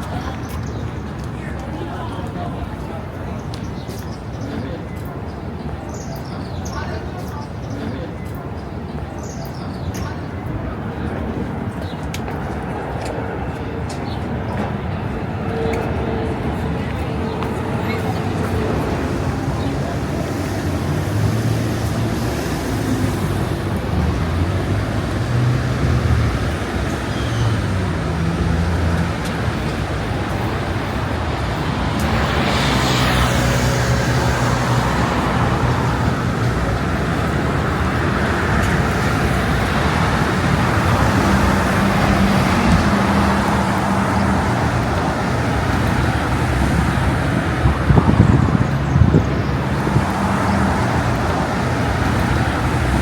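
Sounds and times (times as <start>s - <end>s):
motor vehicles passing: 11.0s - 53.0s.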